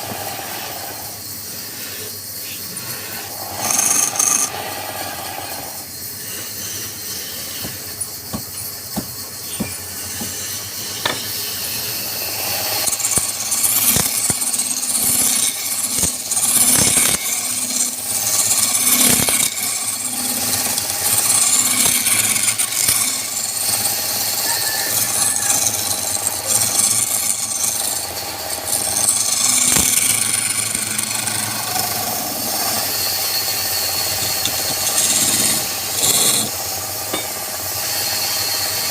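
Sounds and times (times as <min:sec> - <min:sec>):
turning tool scraping spinning wood: 0:00.0 - 0:38.9
sharp knocks: 0:07.6 - 0:10.4.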